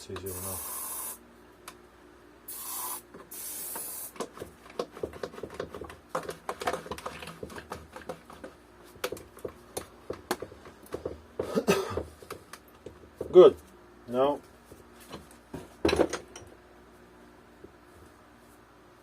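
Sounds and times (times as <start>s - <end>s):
aerosol spray hisses: 0.3s - 1.2s, 2.5s - 4.2s
wooden parts clicking and knocking: 4.2s - 11.2s.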